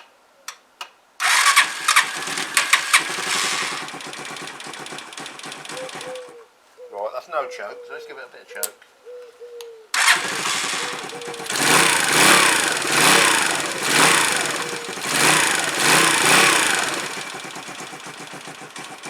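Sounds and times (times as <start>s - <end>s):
motorcycle engine revving: 1.2s - 6.3s, 10.0s - 19.0s.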